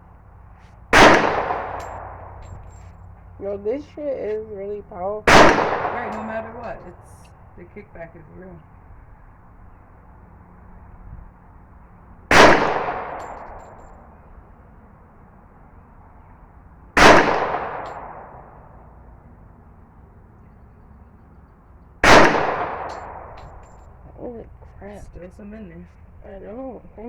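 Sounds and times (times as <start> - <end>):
pistol shots: 0.9 - 2.6, 5.3 - 6.8, 12.3 - 13.8, 17.0 - 18.6, 22.0 - 23.7.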